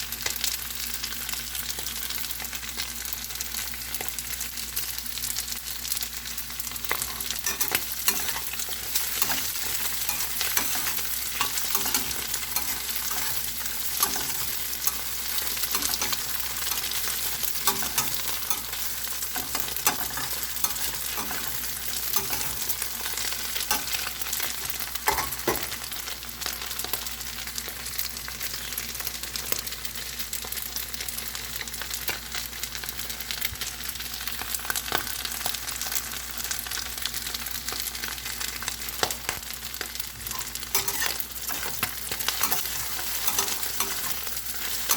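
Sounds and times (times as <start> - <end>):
food sizzling in a pot: 0.0 - 44.9
spatula scraping a pan: 6.8 - 25.8, 40.2 - 44.9.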